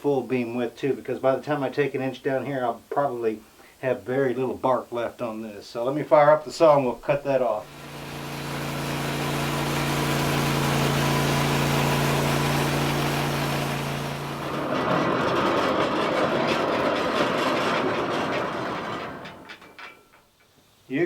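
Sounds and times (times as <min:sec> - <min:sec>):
sawmill engine running: 0:07.6 - 0:19.8
rough noisy sound: 0:07.6 - 0:20.1.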